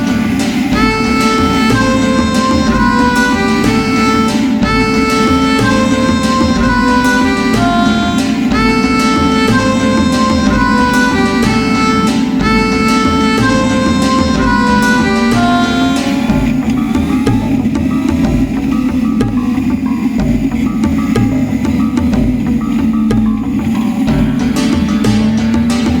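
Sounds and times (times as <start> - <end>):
melody of held notes: 0.0 - 26.0
steady beat: 0.0 - 26.0.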